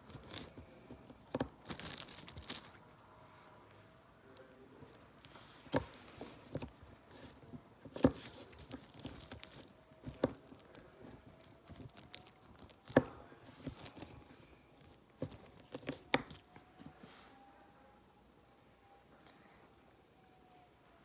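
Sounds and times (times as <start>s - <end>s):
faint steady tone: 2.6s - 21.0s.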